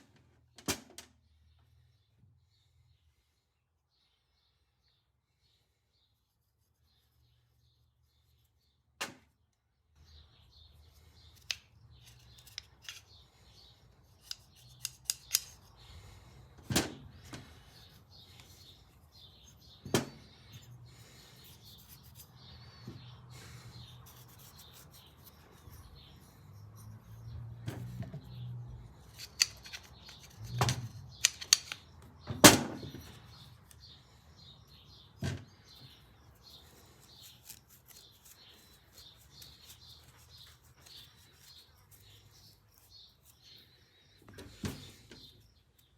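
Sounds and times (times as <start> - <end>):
small parts handled on a workbench: 11.2 - 13.3, 14.0 - 15.8, 29.0 - 33.9.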